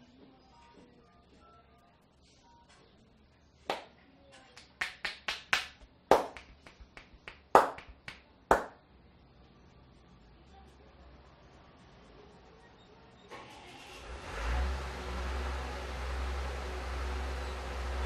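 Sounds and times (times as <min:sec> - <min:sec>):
hands slapping in massage: 0:03.7 - 0:03.9, 0:04.6 - 0:08.8.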